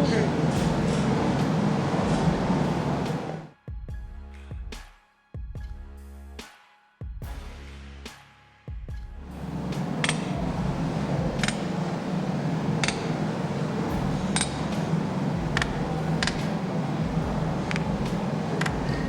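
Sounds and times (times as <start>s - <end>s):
steady low rumble: 0.0s - 3.5s, 9.2s - 19.0s.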